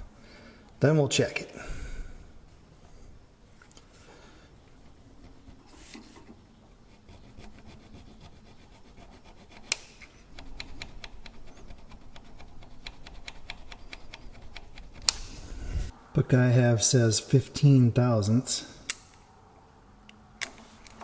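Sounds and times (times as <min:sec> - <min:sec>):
file rasping on metal: 0:07.0 - 0:09.8
sharp click: 0:12.8 - 0:15.4.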